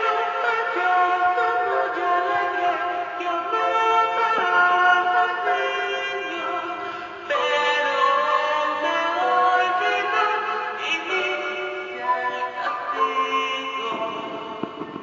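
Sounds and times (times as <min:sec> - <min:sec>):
instrumental music with held notes: 0:00.0 - 0:15.0.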